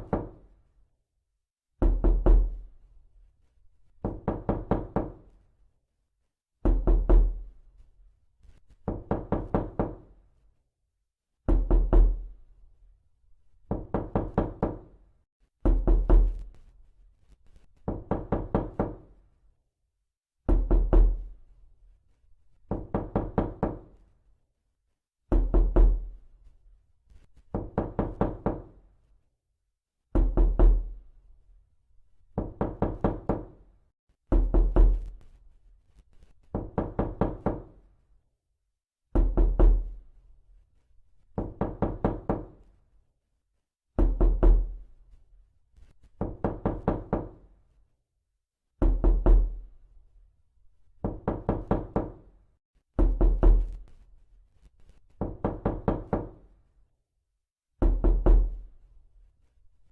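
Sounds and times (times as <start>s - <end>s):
knocking on door: 0.0s - 0.4s, 1.8s - 2.6s, 4.0s - 5.2s, 6.6s - 7.4s, 8.9s - 10.0s, 13.7s - 14.9s, 15.7s - 16.4s, 17.9s - 19.0s, 20.5s - 21.3s, 22.7s - 23.9s, 25.3s - 26.0s, 27.5s - 28.8s, 30.1s - 30.9s, 32.4s - 33.6s, 34.3s - 35.1s, 36.5s - 37.8s, 39.2s - 39.9s, 41.4s - 42.6s, 44.0s - 44.8s, 46.2s - 47.4s, 48.8s - 49.6s, 51.0s - 52.2s, 53.0s - 53.8s, 55.2s - 56.4s, 57.8s - 58.5s.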